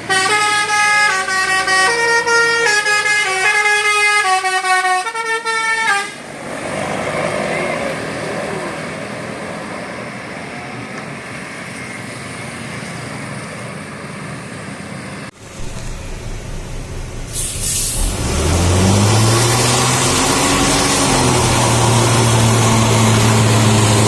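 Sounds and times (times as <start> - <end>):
bus engine and road noise: 0.0 - 24.0
air brakes hissing: 15.4 - 18.8.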